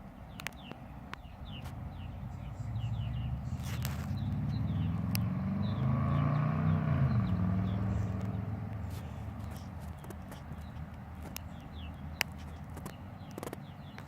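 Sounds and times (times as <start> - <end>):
small birds chirping: 0.0 - 14.0
vehicle engine passing by: 1.3 - 13.0.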